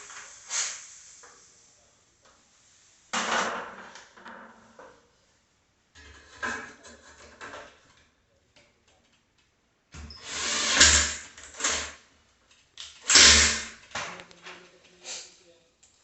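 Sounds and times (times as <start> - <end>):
power drill bursts: 10.2 - 11.9, 13.0 - 13.8.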